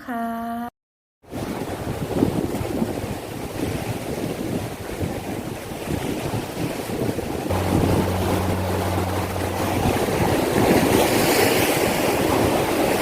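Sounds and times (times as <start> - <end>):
sea waves washing on beach: 1.3 - 13.0
wind buffeting microphone: 1.3 - 13.0
steady low hum: 7.5 - 11.4.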